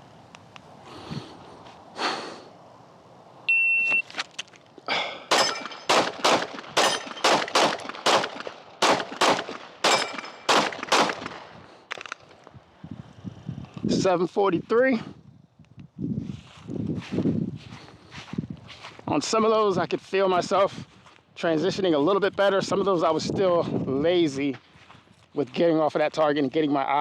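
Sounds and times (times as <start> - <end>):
shot timer beep: 3.5 - 4.1
pistol gunshots: 5.3 - 11.6.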